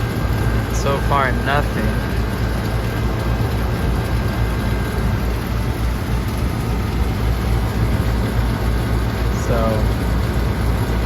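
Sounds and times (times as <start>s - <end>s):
air conditioning unit humming: 0.0s - 11.0s.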